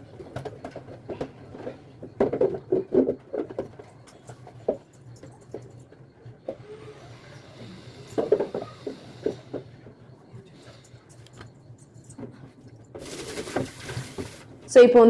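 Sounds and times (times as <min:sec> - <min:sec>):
kitchen items clattering: 0:11.9 - 0:14.5.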